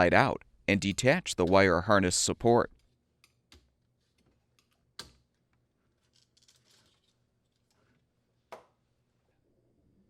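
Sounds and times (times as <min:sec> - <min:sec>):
plastic parts rustling and ticking: 0:05.9 - 0:07.8.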